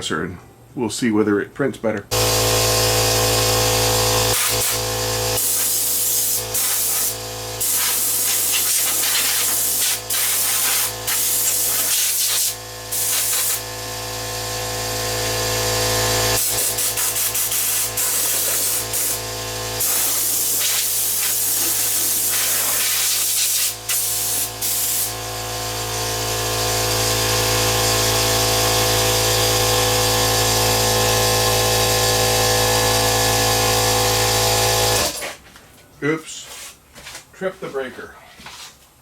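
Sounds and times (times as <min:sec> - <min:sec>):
air compressor humming: 0:02.1 - 0:35.4
air blow gun hissing: 0:04.3 - 0:13.7, 0:16.4 - 0:25.2.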